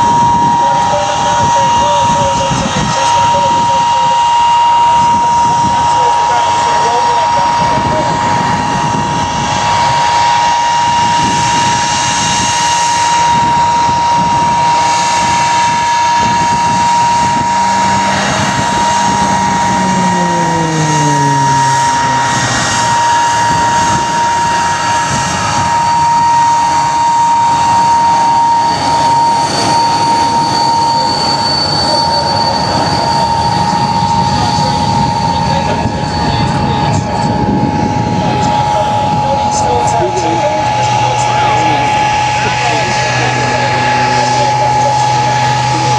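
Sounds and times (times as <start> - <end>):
aircraft engine whine: 0.0 - 45.9
aircraft passing: 0.0 - 45.9.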